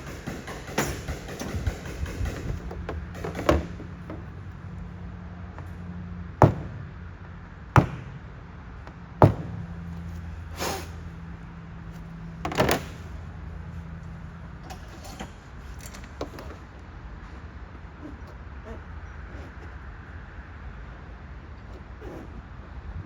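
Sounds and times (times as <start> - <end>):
sharp knocks: 0.0 - 4.4, 6.4 - 6.8, 7.8 - 8.2, 9.2 - 9.7
steady low hum: 0.0 - 23.0.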